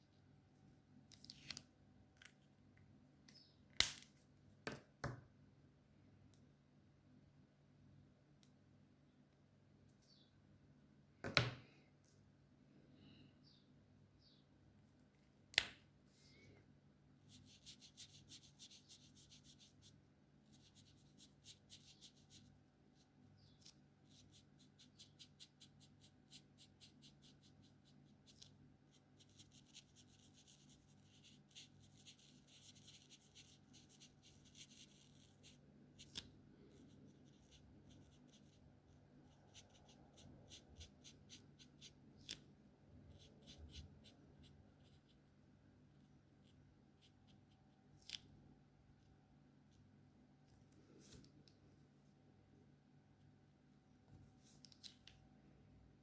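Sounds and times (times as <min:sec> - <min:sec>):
marker tip scratching paper: 0:17.3 - 0:19.9, 0:20.5 - 0:22.5, 0:23.5 - 0:38.6, 0:39.5 - 0:42.4, 0:43.1 - 0:44.2.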